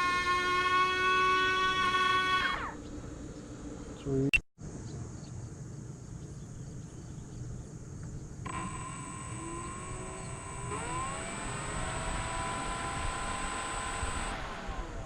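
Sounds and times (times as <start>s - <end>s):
electric motor high whine: 0.0s - 2.9s, 8.4s - 15.0s.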